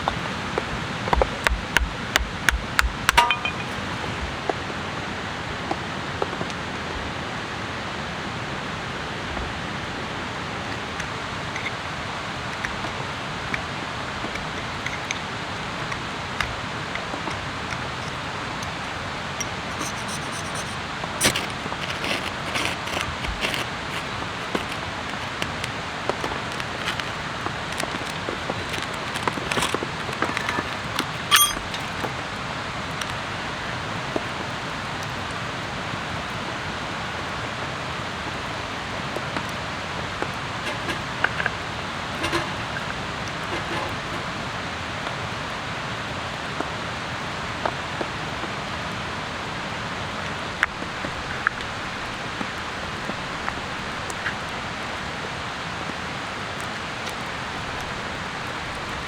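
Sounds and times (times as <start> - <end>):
steady rain: 3.8 - 19.8, 31.8 - 59.0
gear handling clicks and knocks: 12.5 - 32.1, 40.2 - 44.3.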